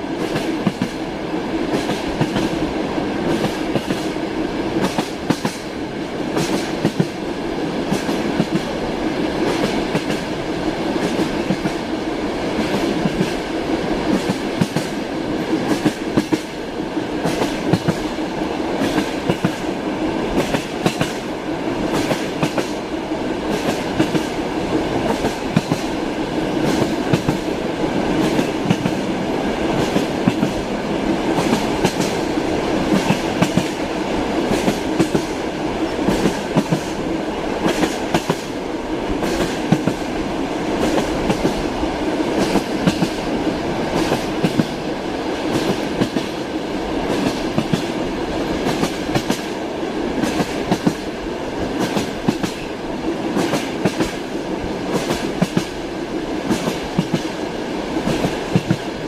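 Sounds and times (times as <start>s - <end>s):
railway car rolling rumble: 0.0s - 59.0s
train wheels clacking over rail joints: 4.8s - 5.7s, 6.3s - 7.2s, 14.1s - 16.6s, 17.2s - 18.1s, 18.8s - 19.7s, 20.4s - 22.8s, 25.0s - 25.9s, 31.3s - 33.8s, 36.0s - 37.0s, 42.4s - 43.2s, 43.9s - 44.8s, 50.2s - 52.7s.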